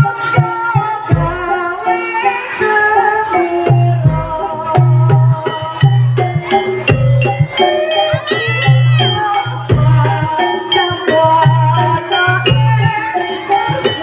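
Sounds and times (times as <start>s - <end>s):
ringing pitched metal tones: 3.2s - 14.0s
wavering high melody: 5.8s - 14.0s.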